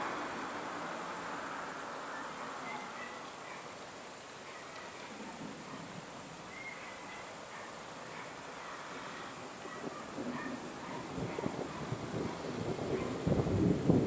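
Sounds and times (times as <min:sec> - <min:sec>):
crickets chirring: 0:00.0 - 0:14.0
distant noise wash: 0:00.0 - 0:14.0.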